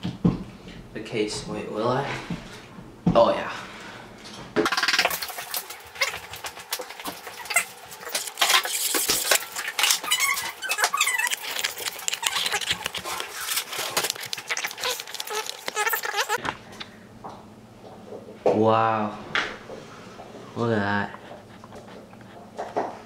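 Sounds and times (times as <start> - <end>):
packaging clicks and rustles: 5.1 - 16.4
short squeaks: 7.4 - 13.0, 14.5 - 16.4.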